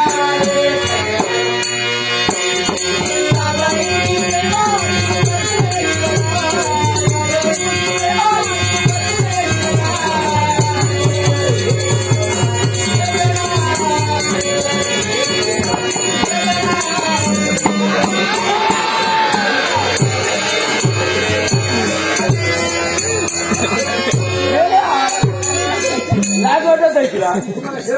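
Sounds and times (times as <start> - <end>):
small cymbals jingling: 0.0 - 27.5
hand drum beating: 2.3 - 24.4.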